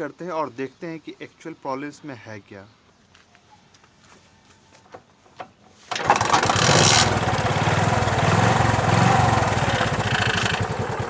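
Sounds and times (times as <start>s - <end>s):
scooter engine starting and running: 5.9s - 11.0s.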